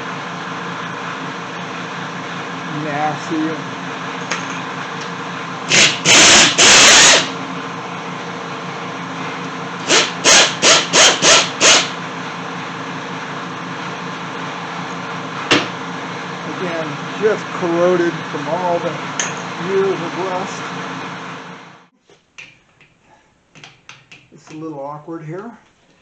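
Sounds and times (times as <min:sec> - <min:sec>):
power tool in short bursts: 0:05.7 - 0:07.3, 0:09.8 - 0:11.9.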